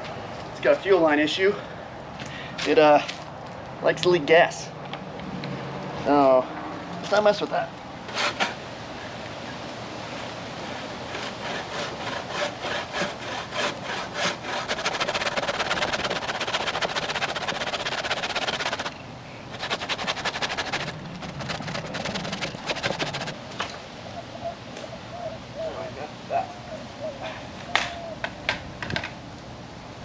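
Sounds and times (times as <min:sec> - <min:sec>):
hand saw cutting branch: 0:08.1 - 0:08.6, 0:10.6 - 0:23.4.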